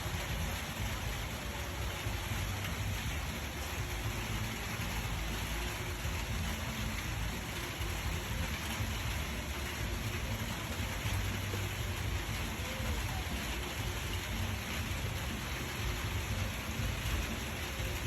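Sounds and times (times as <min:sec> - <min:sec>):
steady rain falling: 0:00.0 - 0:18.0.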